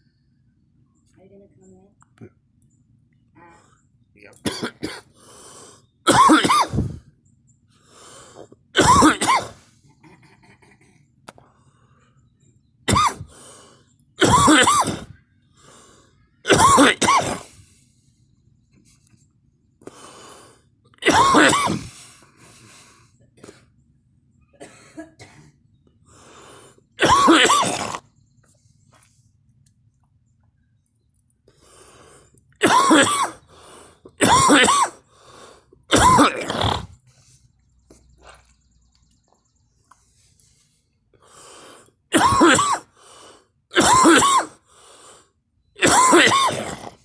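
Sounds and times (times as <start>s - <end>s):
person coughing hard: 4.4s - 5.2s, 6.1s - 7.0s, 8.8s - 10.8s, 12.9s - 13.4s, 14.2s - 15.2s, 16.5s - 17.6s, 21.0s - 22.0s, 24.6s - 25.6s, 27.0s - 28.0s, 32.6s - 33.5s, 34.2s - 35.0s, 35.9s - 37.0s, 42.1s - 43.0s, 43.7s - 44.6s, 45.8s - 47.0s
quiet throat sounds: 6.1s - 7.1s, 31.5s - 40.0s, 45.8s - 47.0s.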